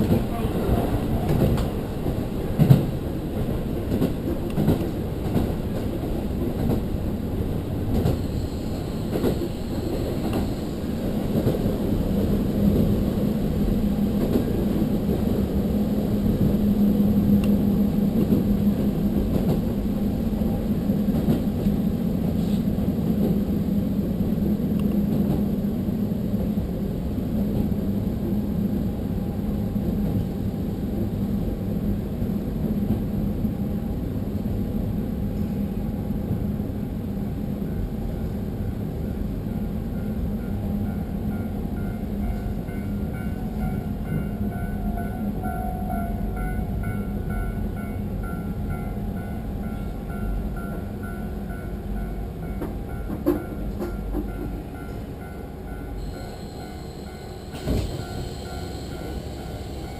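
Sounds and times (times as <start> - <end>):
rail-joint clicks: 0.0 - 11.8, 24.7 - 25.5, 49.6 - 59.9
wheels rumbling on rail: 0.0 - 59.9.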